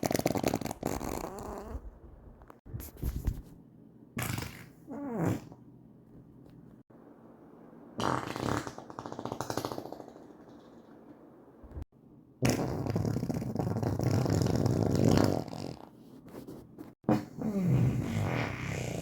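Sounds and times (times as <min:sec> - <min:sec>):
human farts: 0:00.0 - 0:01.8, 0:04.2 - 0:05.6, 0:08.0 - 0:10.7, 0:12.4 - 0:15.9, 0:17.0 - 0:19.0.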